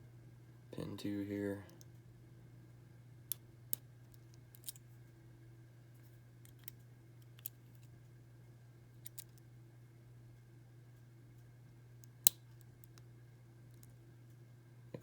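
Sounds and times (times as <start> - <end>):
lock pick clicking against pins: 9.0 - 9.4.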